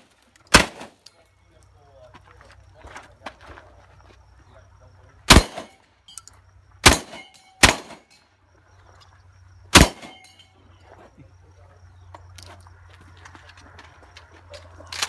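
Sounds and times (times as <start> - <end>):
shotgun shots: 0.0 - 1.0, 5.3 - 5.8, 6.8 - 8.1, 9.7 - 10.3
short metallic ring: 10.1 - 10.6.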